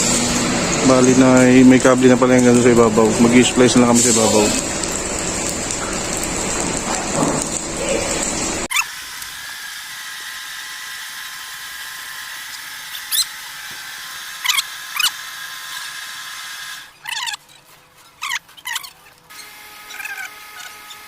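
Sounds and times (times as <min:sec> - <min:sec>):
small animal chirps: 0:13.0 - 0:13.3, 0:14.4 - 0:15.1, 0:17.0 - 0:17.4, 0:18.2 - 0:19.1, 0:19.9 - 0:20.8.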